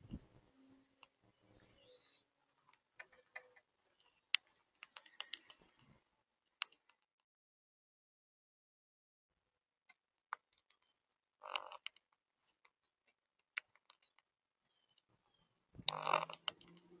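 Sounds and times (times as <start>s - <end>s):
parakeet chirp: 1.6s - 2.2s
parakeet clicky calls: 3.0s - 5.7s, 15.9s - 16.9s.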